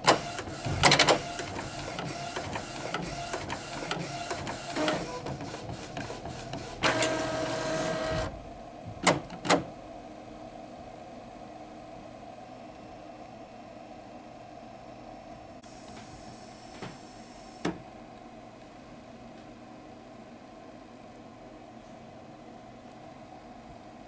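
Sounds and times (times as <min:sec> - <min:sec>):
printer carriage clatter: 0:00.0 - 0:08.3
printer motor whine: 0:00.0 - 0:08.4, 0:12.4 - 0:17.9
faint printer hum: 0:00.0 - 0:24.0
printer sharp knocks: 0:00.1 - 0:04.2.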